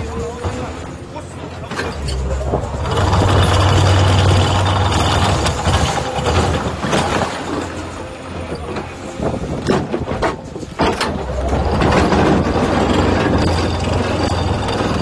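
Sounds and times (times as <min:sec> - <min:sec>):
excavator diesel engine under load: 0:00.0 - 0:15.0.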